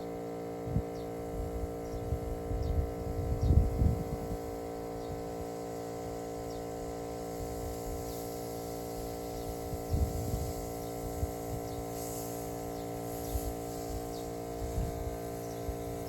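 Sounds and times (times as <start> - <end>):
small pump motor humming: 0.0 - 16.0.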